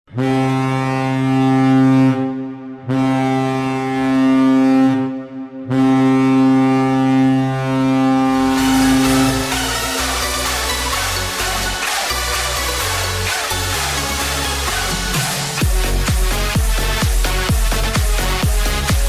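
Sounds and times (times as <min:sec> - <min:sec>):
arena goal horn blasts: 0:00.1 - 0:12.1.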